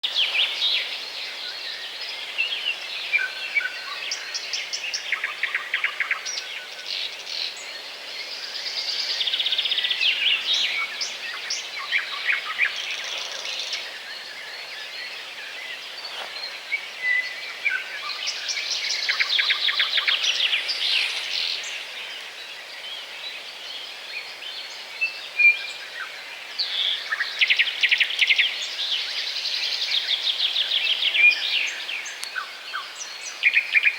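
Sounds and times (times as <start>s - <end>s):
songbirds chirping and trilling: 0.0s - 33.9s.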